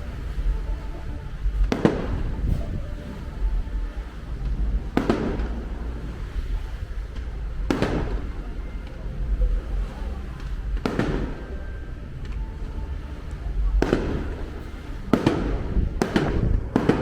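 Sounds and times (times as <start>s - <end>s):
steady low rumble: 0.0s - 17.0s
fireworks booms: 1.4s - 8.6s, 9.2s - 11.5s, 13.4s - 17.0s.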